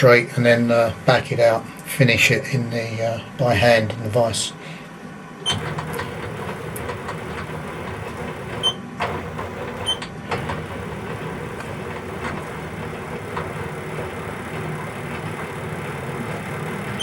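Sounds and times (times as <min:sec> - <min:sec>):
bench lathe running: 0:05.4 - 0:17.0.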